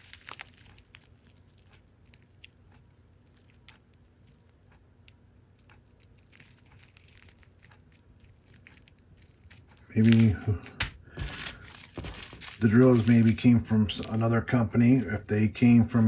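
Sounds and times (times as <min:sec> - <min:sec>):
plastic bags crinkling: 0:00.0 - 0:01.6, 0:06.2 - 0:16.0.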